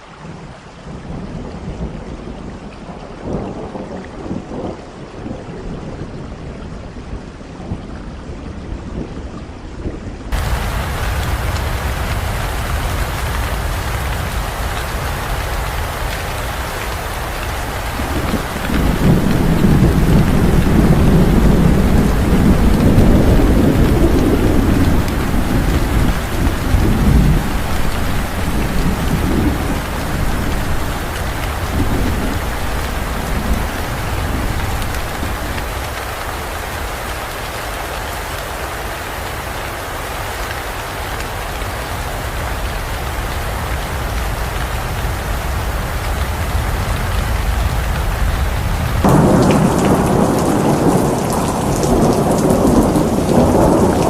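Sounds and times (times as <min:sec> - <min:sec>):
heavy rain falling: 0:00.0 - 0:54.0
thunder rumbling: 0:10.3 - 0:37.5, 0:42.8 - 0:54.0.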